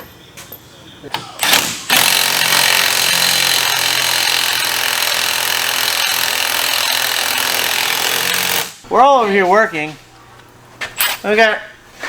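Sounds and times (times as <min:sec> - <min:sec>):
power tool whining: 0:01.4 - 0:08.8.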